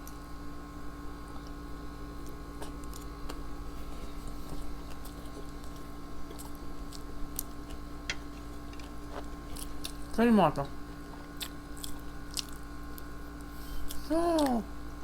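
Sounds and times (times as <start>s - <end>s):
steady background hum: 0.0s - 15.0s
chewing and mouth clicks: 2.2s - 3.5s, 4.2s - 10.1s, 11.0s - 14.6s.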